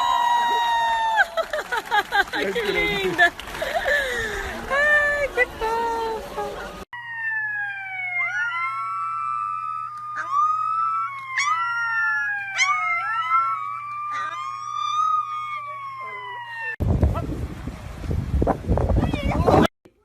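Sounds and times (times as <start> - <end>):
dogs howling: 7.2 - 16.8
dogs yipping: 10.0 - 15.8.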